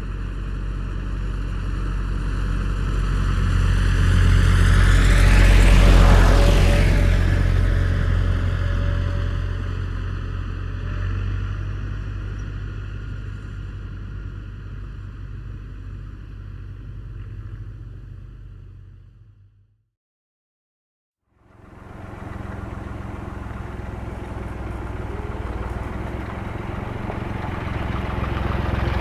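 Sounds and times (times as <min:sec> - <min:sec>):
tractor engine running: 0:21.5 - 0:29.0.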